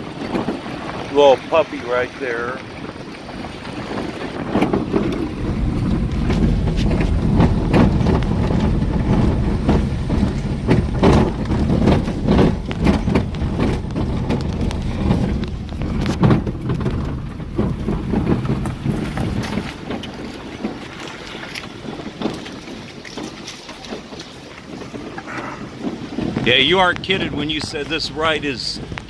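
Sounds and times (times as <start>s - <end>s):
knocks and rattles over bumps: 2.4s - 29.0s
vehicle rumbling on dirt road: 2.5s - 29.0s.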